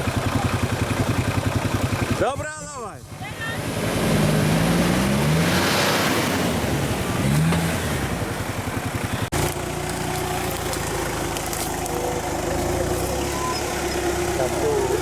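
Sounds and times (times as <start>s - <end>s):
engine running steadily: 0.0s - 5.1s, 6.0s - 15.0s
engine revving under load: 3.5s - 15.0s.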